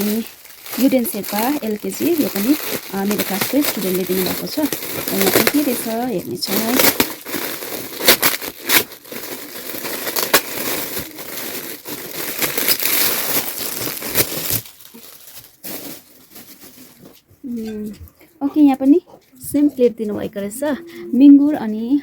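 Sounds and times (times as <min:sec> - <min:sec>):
wrapping paper crinkling and ripping: 0:00.0 - 0:17.3.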